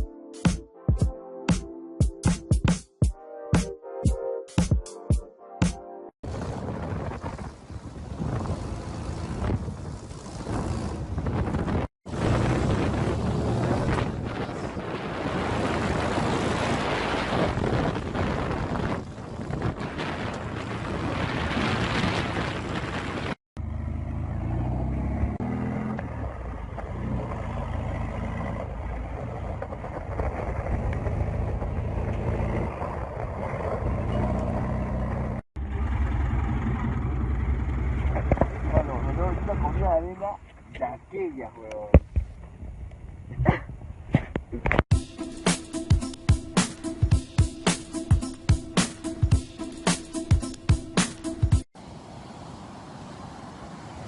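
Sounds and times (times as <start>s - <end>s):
wind rushing on microphone: 6.2s - 23.4s
engine rumble: 6.2s - 44.8s.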